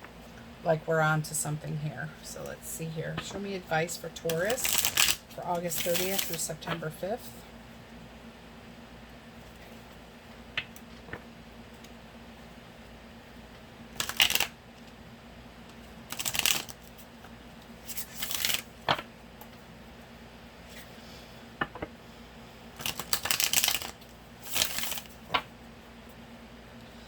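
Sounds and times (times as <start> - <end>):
cards being riffle shuffled: 4.3 - 6.4, 13.9 - 14.9, 16.1 - 17.1, 17.8 - 19.1, 22.8 - 25.5.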